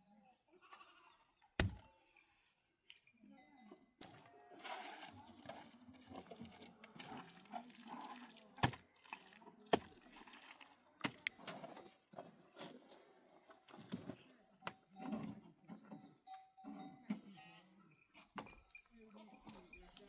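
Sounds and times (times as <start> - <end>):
sharp knocks: 1.6 - 1.8.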